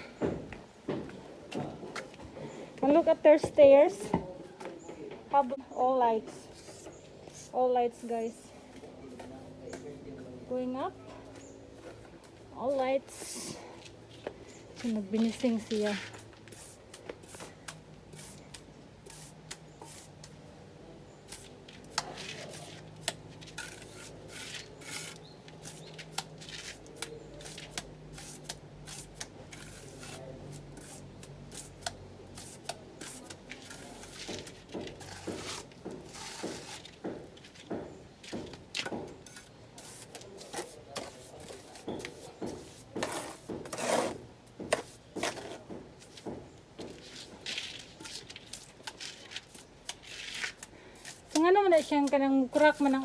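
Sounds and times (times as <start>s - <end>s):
trowel scraping plaster wall: 21.2s - 53.0s.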